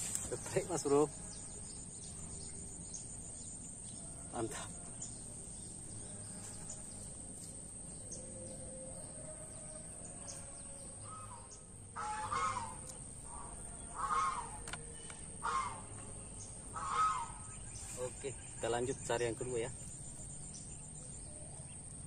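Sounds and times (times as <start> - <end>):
bird calling loudly: 11.0 - 18.6.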